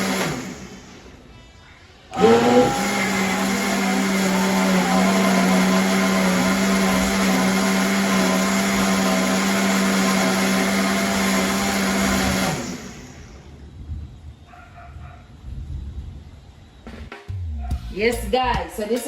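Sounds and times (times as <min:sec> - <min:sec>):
blender running: 0:00.0 - 0:00.9, 0:02.1 - 0:13.4.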